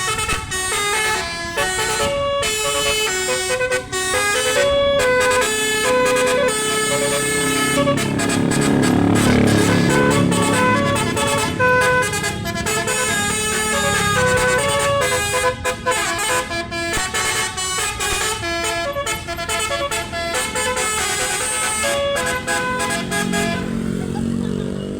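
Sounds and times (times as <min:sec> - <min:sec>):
bus multi-tone horn playing a tune: 0:00.0 - 0:24.9.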